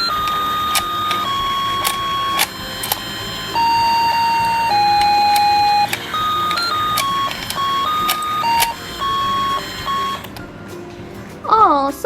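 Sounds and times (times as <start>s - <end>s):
sharp clicks: 0.0s - 10.5s
electronic toy beeping melody: 0.0s - 10.6s.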